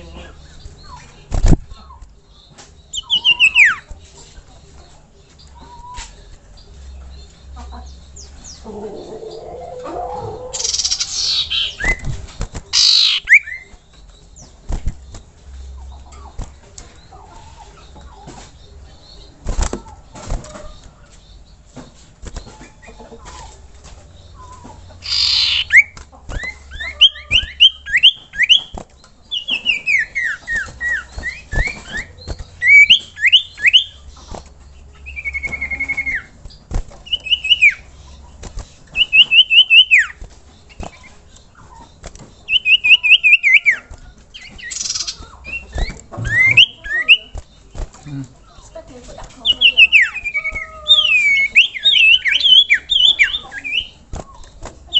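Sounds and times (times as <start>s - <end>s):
noisy rustle: 0.0s - 1.8s
bird singing whistled notes: 2.3s - 3.9s, 10.6s - 15.8s, 24.2s - 34.2s, 35.0s - 36.4s, 37.1s - 38.0s, 38.9s - 47.6s, 49.4s - 54.9s.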